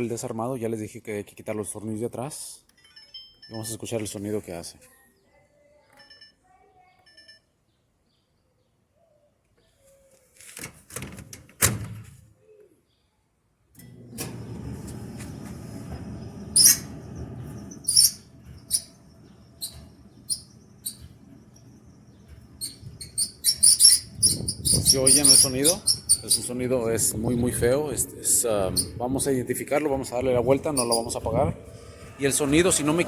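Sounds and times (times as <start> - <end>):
dryer motor humming: 13.8 - 33.0
short high squeaks: 16.5 - 21.7, 22.4 - 26.6, 30.6 - 31.2.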